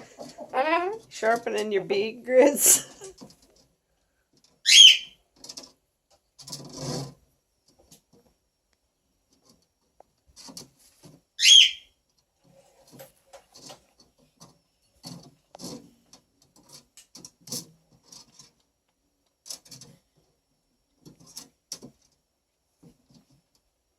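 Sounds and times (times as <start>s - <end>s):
beak scraping on a grate: 4.6s - 5.8s, 6.4s - 7.2s, 10.4s - 11.9s
cockatoo whistled call: 4.7s - 5.1s, 11.4s - 11.8s.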